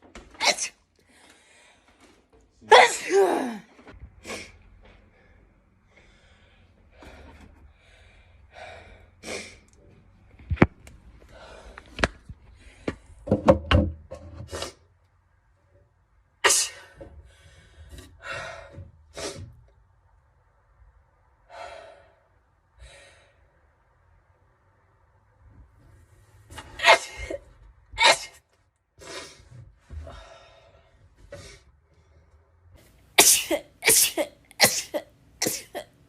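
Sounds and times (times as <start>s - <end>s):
woman sneezing: 0.4s - 0.8s, 2.6s - 3.7s, 26.8s - 27.4s, 28.0s - 28.4s, 33.2s - 35.9s.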